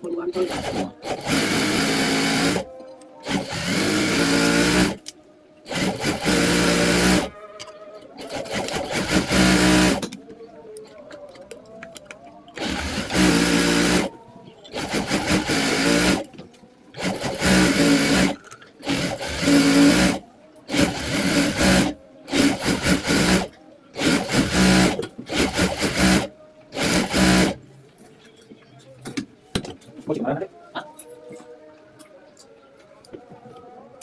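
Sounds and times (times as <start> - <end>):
sewing machine stitching: 0.3 - 5.0, 5.7 - 7.3, 8.2 - 10.1, 12.6 - 14.1, 14.7 - 16.3, 17.0 - 27.6.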